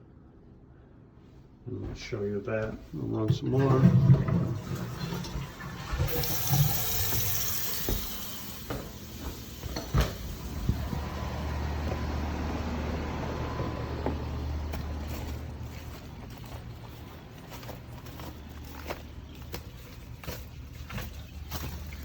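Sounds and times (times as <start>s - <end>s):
water running from tap: 3.6s - 10.5s, 19.8s - 22.0s
steady low hum: 7.7s - 19.3s.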